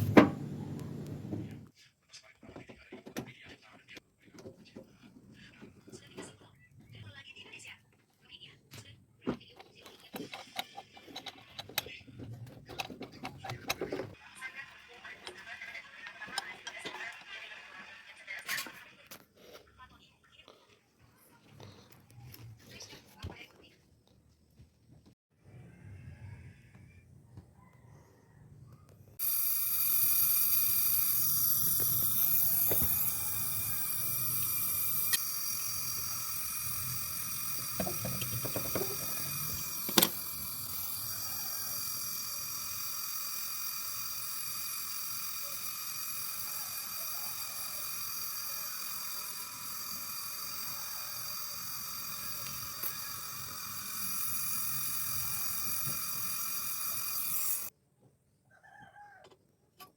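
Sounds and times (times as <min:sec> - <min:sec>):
pressurized gas hissing: 0:29.2 - 0:57.7.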